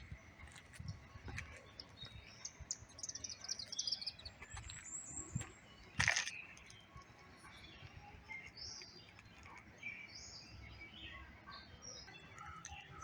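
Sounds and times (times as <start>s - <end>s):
faint birds chirping: 0.0s - 13.0s.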